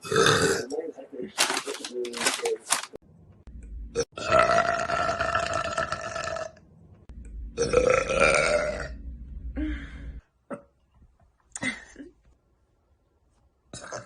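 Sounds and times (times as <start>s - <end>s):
person burping: 0.0s - 0.7s, 4.0s - 6.6s, 7.6s - 9.0s, 10.5s - 10.8s, 13.7s - 14.0s.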